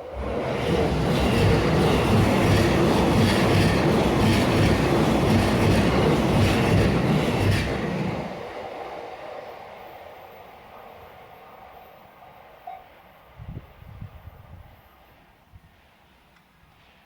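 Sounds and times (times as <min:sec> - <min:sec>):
train wheels clattering over rail joints: 0:00.5 - 0:08.3.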